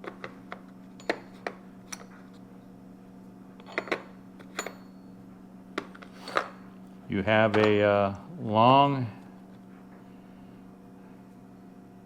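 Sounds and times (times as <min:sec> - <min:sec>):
faint steady hum: 0:00.0 - 0:12.0
metal tools clinking: 0:03.6 - 0:05.1.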